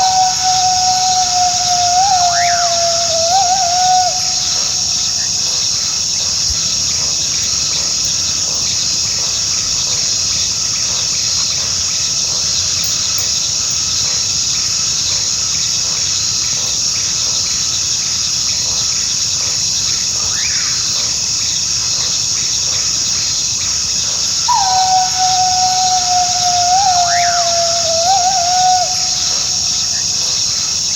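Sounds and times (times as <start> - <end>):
coyote howling: 0.0 - 4.8, 24.5 - 29.8
crickets chirping: 0.0 - 30.9.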